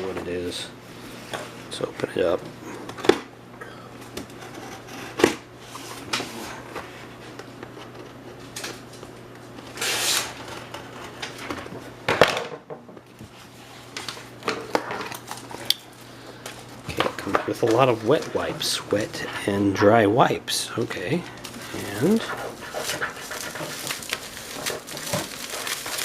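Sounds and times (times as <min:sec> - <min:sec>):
packaging rustling: 0:21.1 - 0:26.0.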